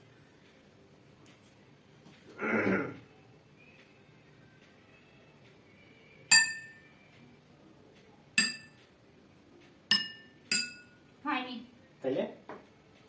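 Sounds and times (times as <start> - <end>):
glasses clinking: 6.3 - 6.8, 8.4 - 8.7, 9.9 - 11.0.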